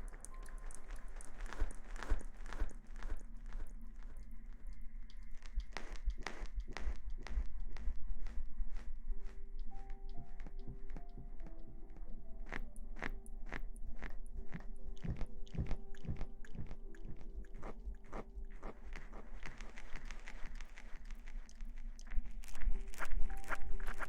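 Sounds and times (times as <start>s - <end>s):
crackling and rustling: 12.4s - 24.0s.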